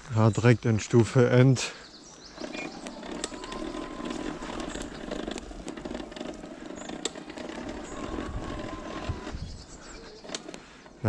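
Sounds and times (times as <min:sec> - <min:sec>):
scattered clicks: 0:02.4 - 0:09.3
electric motor whine: 0:02.4 - 0:10.6.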